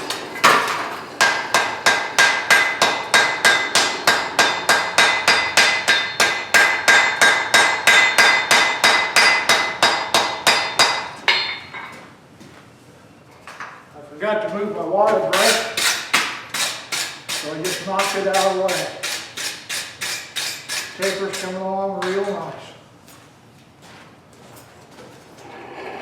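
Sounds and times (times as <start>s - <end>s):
hammer ringing on anvil: 1.2s - 12.0s.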